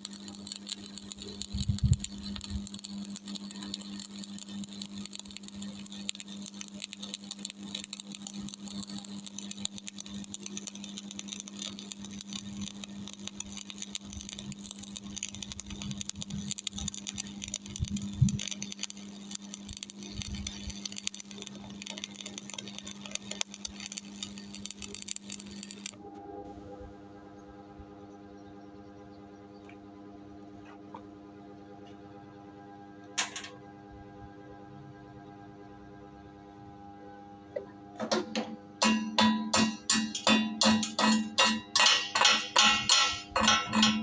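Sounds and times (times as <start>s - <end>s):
welding arc crackling: 0.0s - 26.8s, 38.0s - 44.0s
steady low hum: 0.0s - 44.0s.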